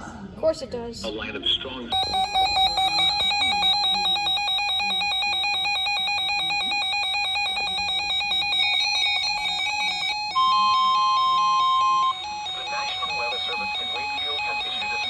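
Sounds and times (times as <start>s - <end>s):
steady high alarm tone: 2.0s - 15.0s
warbling electronic alarm tone: 2.0s - 15.0s.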